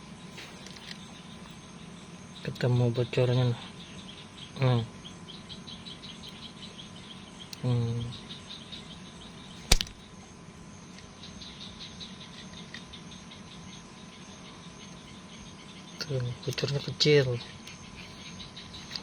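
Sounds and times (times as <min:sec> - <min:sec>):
sharp click: 0:09.7 - 0:10.0.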